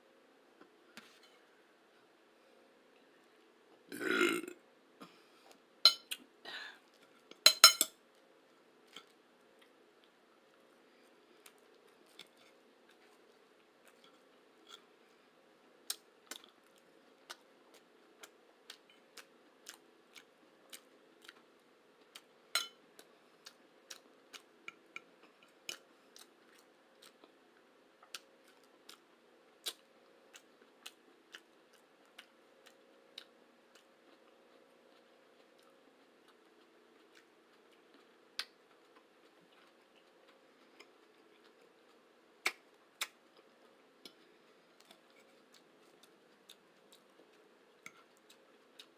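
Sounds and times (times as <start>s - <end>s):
chewing with mouth clicks: 15.8s - 22.3s, 23.0s - 27.4s, 28.0s - 48.9s.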